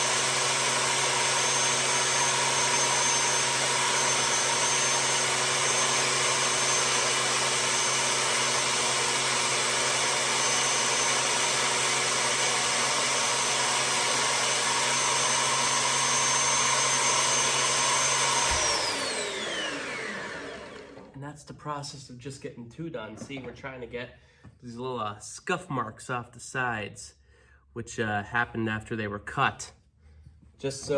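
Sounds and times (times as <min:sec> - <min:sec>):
belt sander whining: 0:00.0 - 0:21.1.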